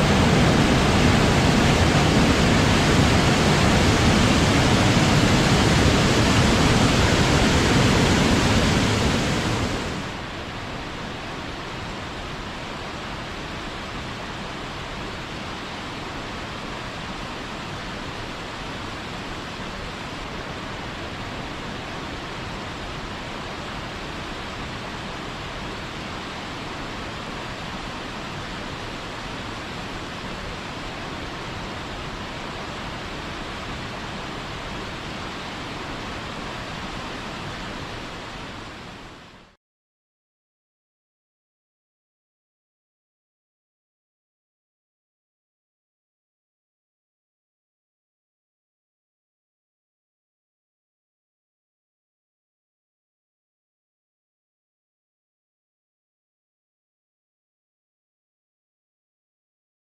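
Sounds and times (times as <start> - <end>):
waterfall rushing: 0.0 - 39.6.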